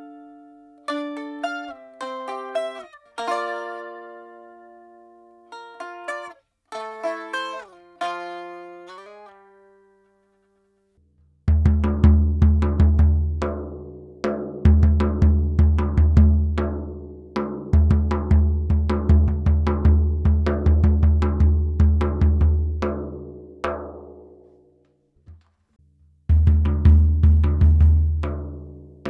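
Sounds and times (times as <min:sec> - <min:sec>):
frame drum played by hand: 0:11.5 - 0:24.4, 0:26.3 - 0:29.0.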